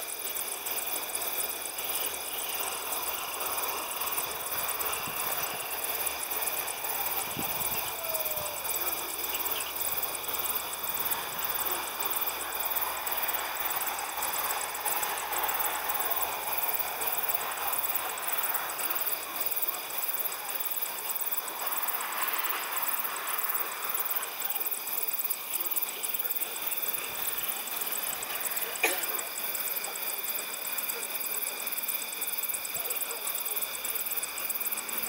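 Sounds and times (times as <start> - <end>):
crickets chirping: 0.0 - 35.0.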